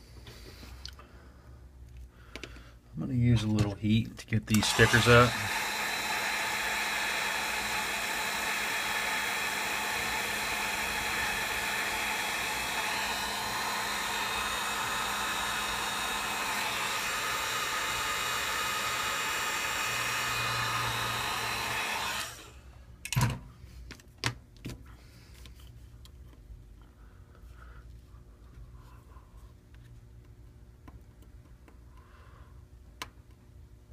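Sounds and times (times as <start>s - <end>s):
hot-air blower running: 4.5s - 22.8s.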